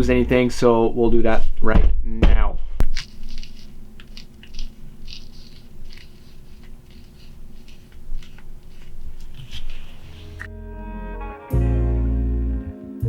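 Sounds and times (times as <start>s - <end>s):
plastic bags crinkling: 2.8s - 10.5s.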